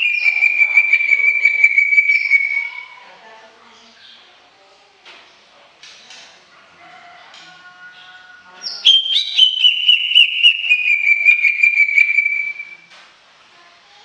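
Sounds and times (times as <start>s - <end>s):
bird whistling song: 0.0s - 3.0s, 8.6s - 12.9s.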